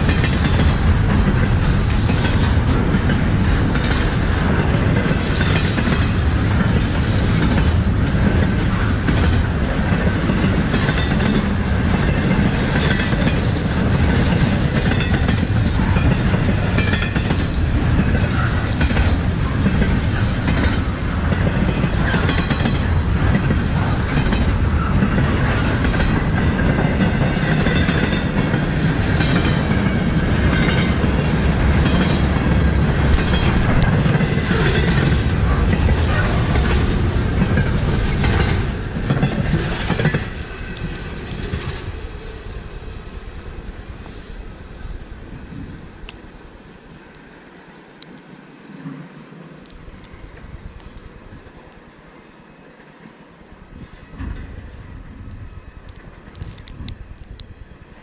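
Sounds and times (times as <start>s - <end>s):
wheels clacking over rail joints: 0.0s - 42.4s
freight train rumbling past: 0.0s - 58.0s.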